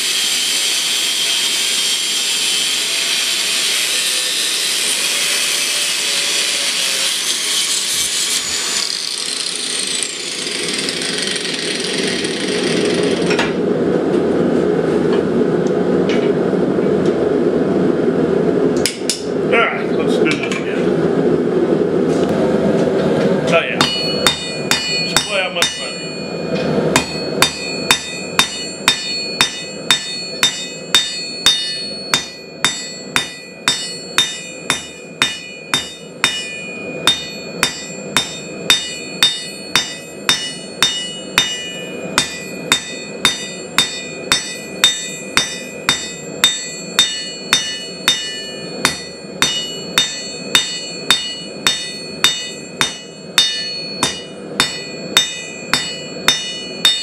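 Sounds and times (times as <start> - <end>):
hammer ringing on anvil: 23.8 - 57.0.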